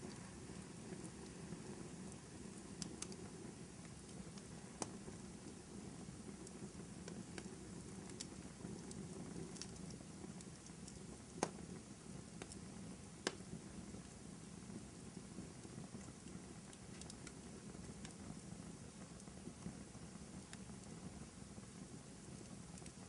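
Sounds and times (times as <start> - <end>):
fireplace crackling: 0.0 - 23.0.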